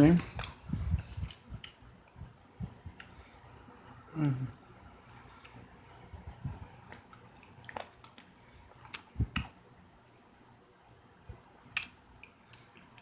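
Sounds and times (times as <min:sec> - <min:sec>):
person chewing crunchy food: 0:00.1 - 0:03.4, 0:04.2 - 0:09.6.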